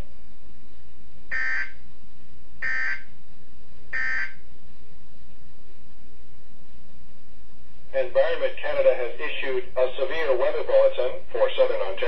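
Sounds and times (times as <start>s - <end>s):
buzzy electronic data bursts: 2.6s - 3.0s, 4.0s - 4.4s.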